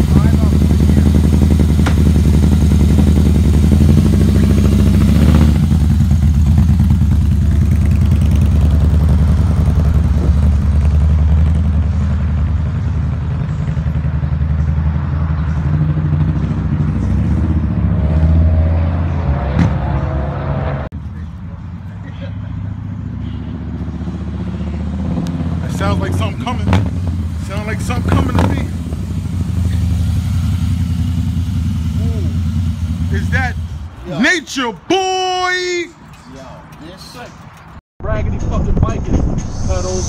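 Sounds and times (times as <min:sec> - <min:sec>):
motorcycle engine running: 0:00.0 - 0:18.0, 0:22.5 - 0:34.1.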